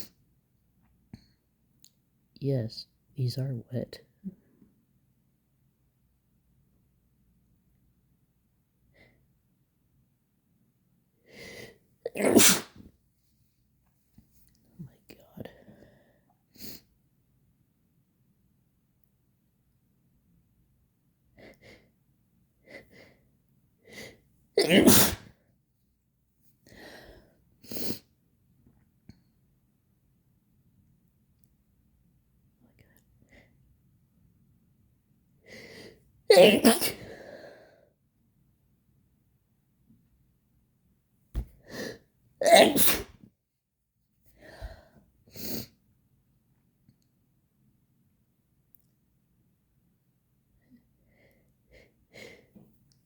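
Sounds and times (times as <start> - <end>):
person sneezing: 12.1 - 12.9, 24.6 - 25.4, 36.3 - 37.2, 41.4 - 43.2.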